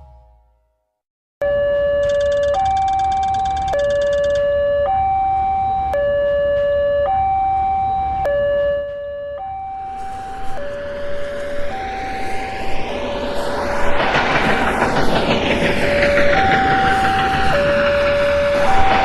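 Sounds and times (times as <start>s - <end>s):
two-tone crossing alarm: 1.4s - 13.7s, 15.9s - 19.0s
rapid ticking: 2.0s - 4.4s, 12.9s - 19.0s
rushing noise: 9.7s - 19.0s.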